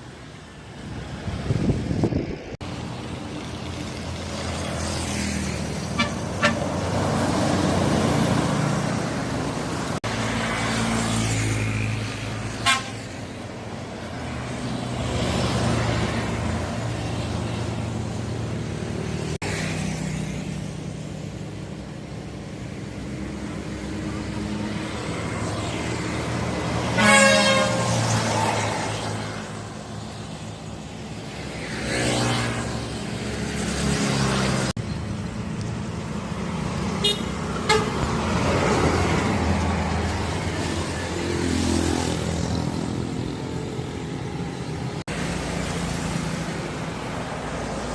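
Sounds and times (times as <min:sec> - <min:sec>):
large vehicles passing: 0:00.0 - 0:47.9
loud horn blast: 0:06.0 - 0:06.8, 0:12.6 - 0:13.1, 0:26.9 - 0:28.0, 0:37.0 - 0:38.1.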